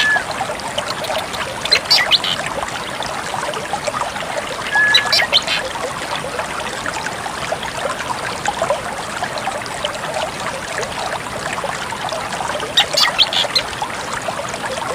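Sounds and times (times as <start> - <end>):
bird calls: 0.0 - 0.3, 1.0 - 2.4, 4.6 - 5.6, 12.8 - 13.7
trickle of running water: 0.0 - 14.9.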